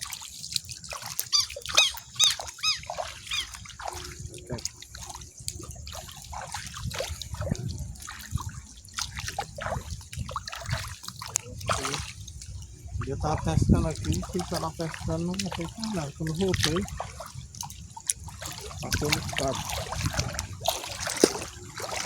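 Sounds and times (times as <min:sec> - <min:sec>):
splashing through shallow water: 0:00.0 - 0:22.0
animal chirping calls: 0:01.2 - 0:03.7.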